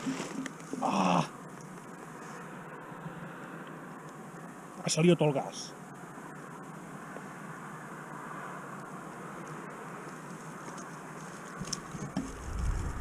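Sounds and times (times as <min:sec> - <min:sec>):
low wind buffeting: 0:06.0 - 0:13.0
wind rushing on microphone: 0:11.6 - 0:13.0.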